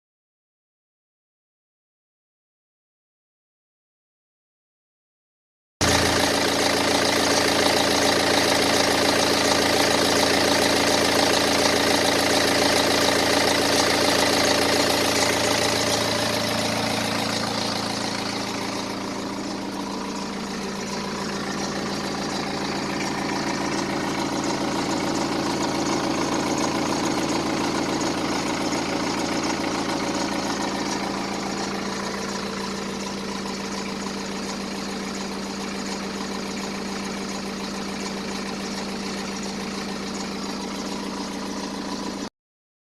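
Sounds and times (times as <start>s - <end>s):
diesel engine idling: 5.8s - 42.3s.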